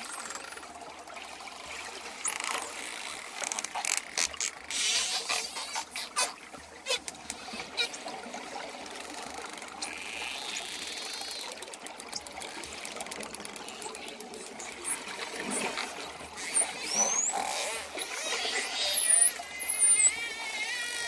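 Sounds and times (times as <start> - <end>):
dolphins clicking: 2.2 - 21.0
dolphins whistling: 15.6 - 21.0.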